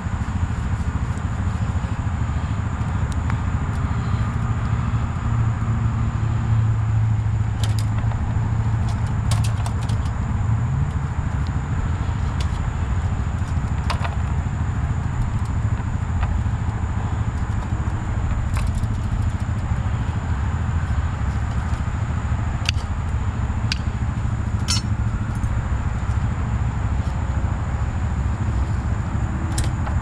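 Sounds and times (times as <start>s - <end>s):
steady low rumble: 0.0s - 30.0s
metallic clicks and clinks: 24.6s - 25.5s.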